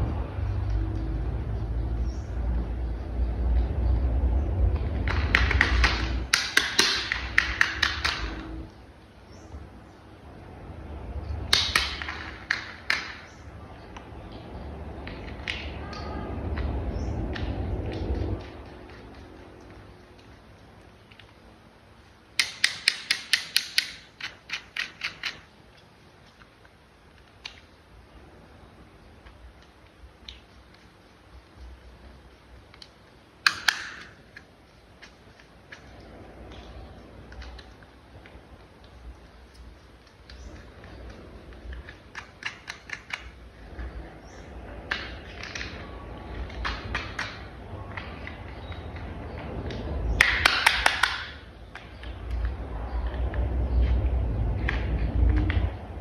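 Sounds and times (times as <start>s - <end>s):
sharp clicks and taps: 4.6s - 8.8s, 22.3s - 27.7s, 32.7s - 55.9s.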